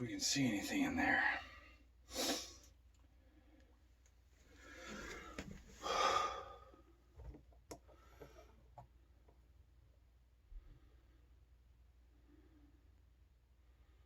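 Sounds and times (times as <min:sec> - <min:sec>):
person breathing out heavily: 0:04.5 - 0:06.8.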